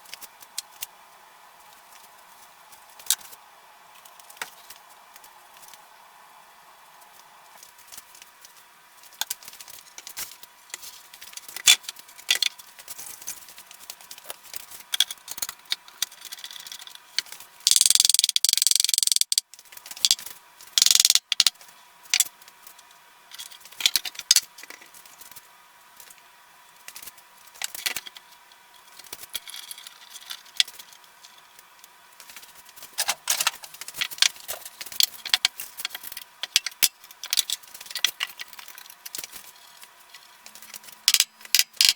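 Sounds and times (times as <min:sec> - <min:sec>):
tools clicking and rattling: 0:15.0 - 0:19.4, 0:20.8 - 0:21.5, 0:32.2 - 0:41.9.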